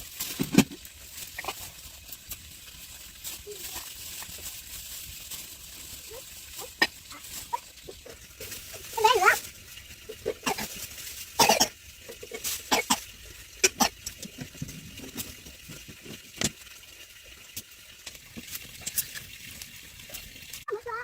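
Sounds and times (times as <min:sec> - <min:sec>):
dry corn plants cracking: 0:00.0 - 0:11.4.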